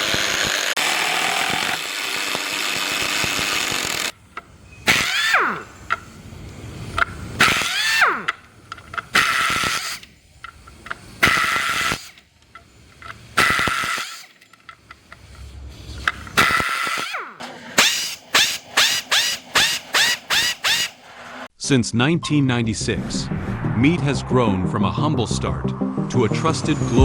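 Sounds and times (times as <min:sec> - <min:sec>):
power screwdriver driving screws: 0:00.0 - 0:04.2, 0:04.8 - 0:06.0, 0:07.0 - 0:10.1, 0:11.2 - 0:15.0, 0:16.0 - 0:21.0.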